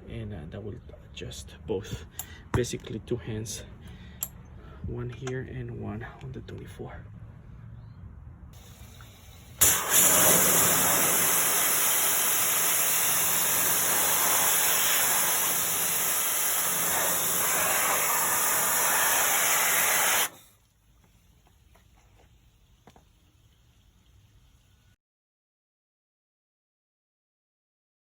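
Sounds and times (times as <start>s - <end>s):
pressurised spray hissing: 8.6s - 20.6s.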